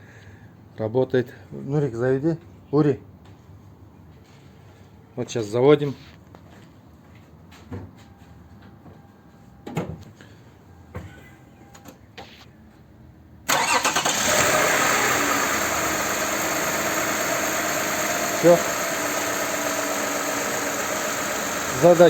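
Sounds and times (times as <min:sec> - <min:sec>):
car engine starting and idling: 0:13.4 - 0:22.0.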